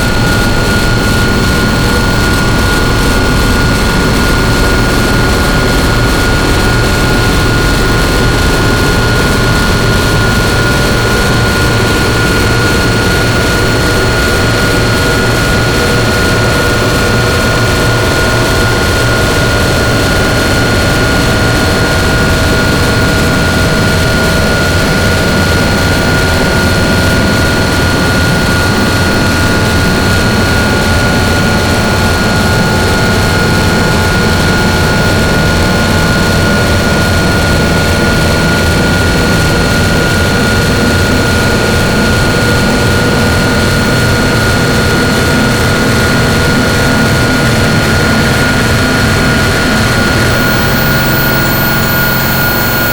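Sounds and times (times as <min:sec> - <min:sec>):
distorted electronic noise drone: 0:00.0 - 0:25.1, 0:50.0 - 0:52.9
high whining tones: 0:50.2 - 0:52.9.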